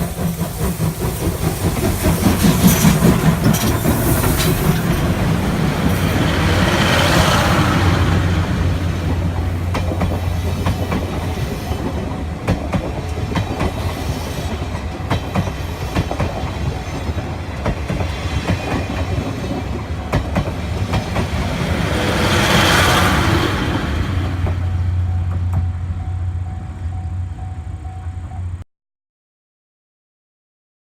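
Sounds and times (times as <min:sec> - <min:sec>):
train wheels clacking on rail joints: 0:00.0 - 0:26.2
train low rumble: 0:00.0 - 0:28.6.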